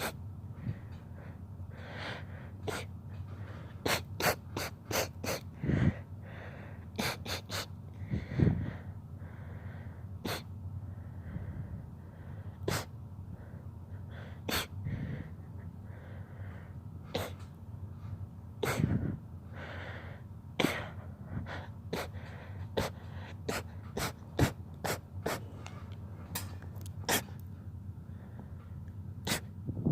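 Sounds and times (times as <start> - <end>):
rapid sneezes: 2.6 - 2.9, 3.8 - 5.5, 7.0 - 7.8, 10.2 - 10.5, 12.6 - 12.9, 14.5 - 14.8, 17.1 - 17.5, 18.6 - 19.0, 21.9 - 22.2, 22.8 - 25.6, 27.0 - 27.4, 29.2 - 29.6.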